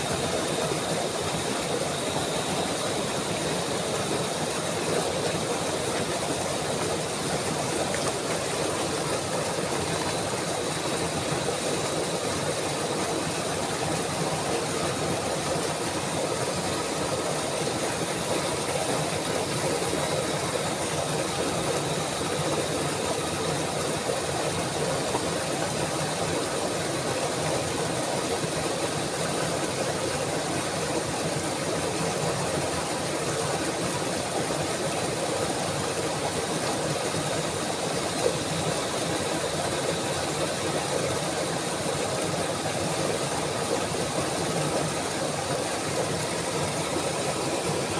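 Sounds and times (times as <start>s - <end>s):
rushing water: 0.0s - 47.9s.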